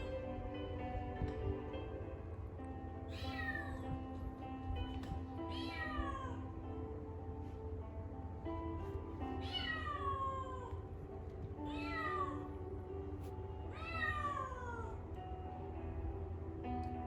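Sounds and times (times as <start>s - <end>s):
background music with held notes: 0.0s - 17.0s
kitten meowing: 3.1s - 4.0s, 5.5s - 6.5s, 9.4s - 10.8s, 11.6s - 12.5s, 13.7s - 15.0s.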